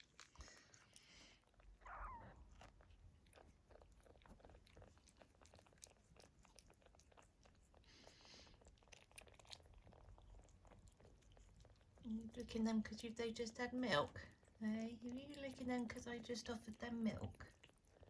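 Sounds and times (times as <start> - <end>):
cat licking kittens: 0.0 - 18.0.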